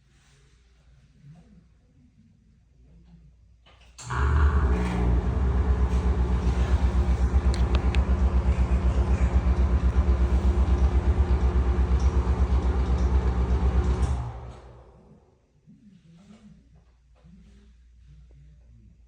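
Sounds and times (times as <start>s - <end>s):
exhaust fan grinding rumble: 4.0s - 15.3s.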